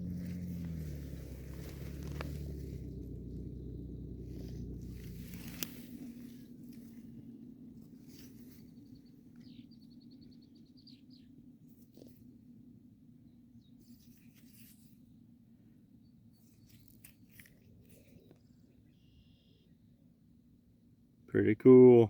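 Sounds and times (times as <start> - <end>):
songbird calls: 0.0 - 12.3, 16.0 - 20.0
low steady rumble: 0.0 - 22.0
bird trill: 18.8 - 19.8.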